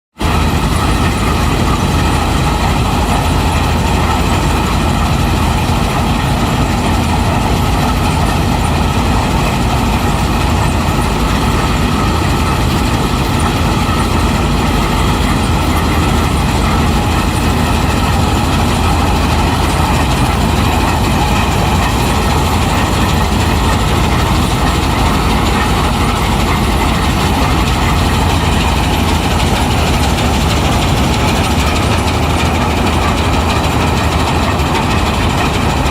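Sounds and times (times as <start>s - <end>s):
combine harvester droning: 0.2s - 35.9s.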